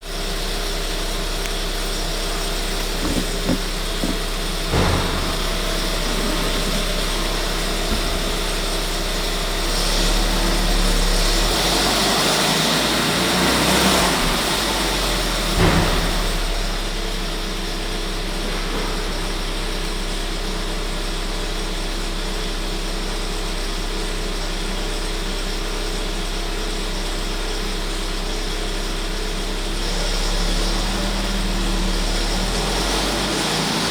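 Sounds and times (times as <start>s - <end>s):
car engine running: 0.0s - 13.1s
sharp engine knocks: 2.6s - 8.9s, 15.6s - 16.7s.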